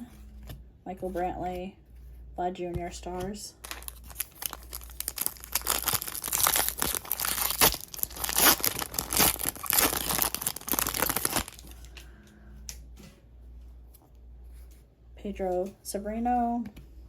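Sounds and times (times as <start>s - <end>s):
plastic wrapper tearing and crinkling: 3.6s - 11.9s.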